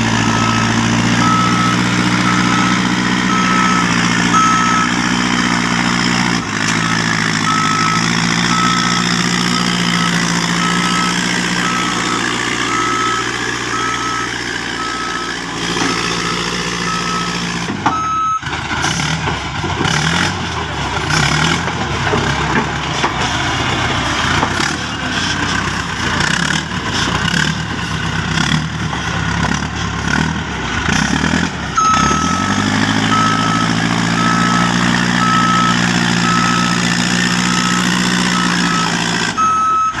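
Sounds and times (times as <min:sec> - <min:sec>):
heavy diesel machine engine: 0:00.0 - 0:40.0
reversing alarm beeping: 0:00.1 - 0:06.2, 0:07.4 - 0:18.4, 0:31.8 - 0:40.0.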